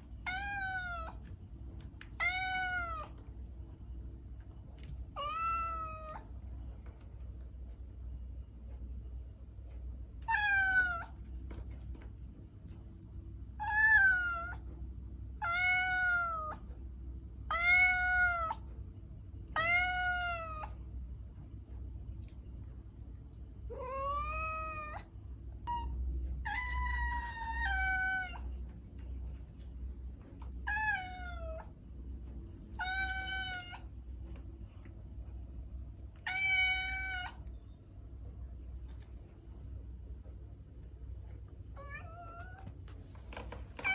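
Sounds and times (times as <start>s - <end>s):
faint low hum: 0.0s - 43.9s
cat meowing: 0.2s - 1.2s, 2.2s - 3.2s, 5.1s - 6.3s, 10.3s - 11.2s, 13.6s - 14.7s, 15.4s - 16.6s, 17.5s - 18.6s, 19.6s - 20.8s, 23.7s - 28.5s, 30.6s - 31.7s, 32.8s - 33.9s, 36.2s - 37.4s, 41.8s - 42.7s.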